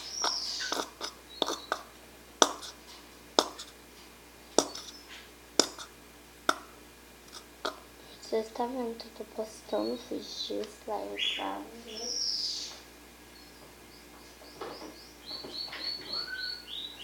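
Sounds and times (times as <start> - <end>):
utensil tapping container: 4.6 - 4.9, 5.6 - 5.9.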